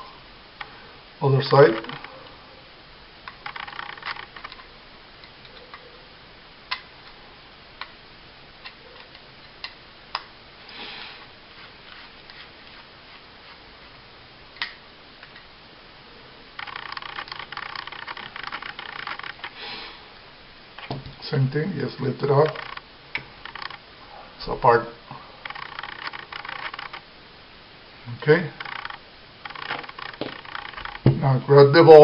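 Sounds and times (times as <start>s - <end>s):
small metal parts clicking: 3.3s - 5.8s, 16.6s - 19.5s, 22.4s - 22.8s, 23.4s - 23.8s, 25.4s - 27.0s, 28.6s - 31.0s
metal parts scraping rattle: 3.4s - 4.6s.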